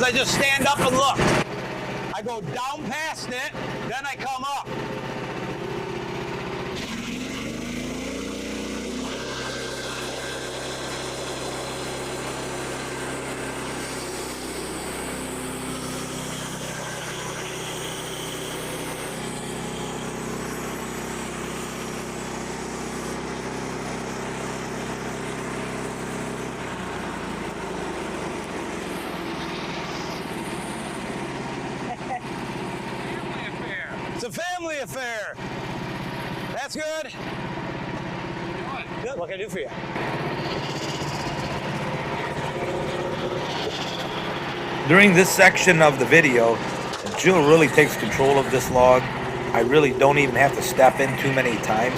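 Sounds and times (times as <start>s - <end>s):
sawmill gas engine revving: 0.0s - 51.9s
band blade cutting wood: 6.7s - 25.3s.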